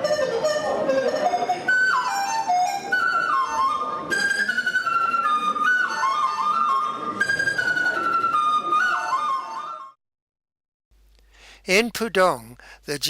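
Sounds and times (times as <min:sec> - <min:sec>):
flute melody with accompaniment: 0:00.0 - 0:10.0.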